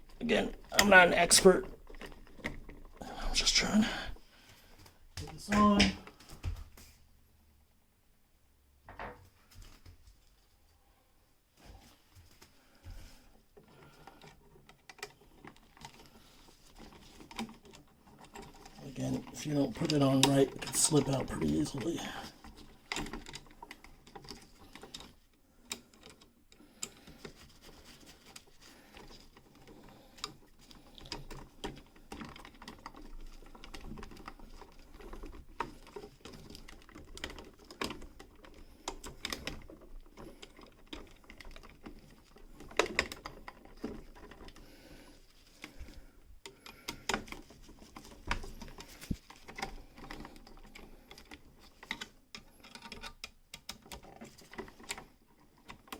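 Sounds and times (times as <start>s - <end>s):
pliers and wire clicking: 45.6s - 55.0s.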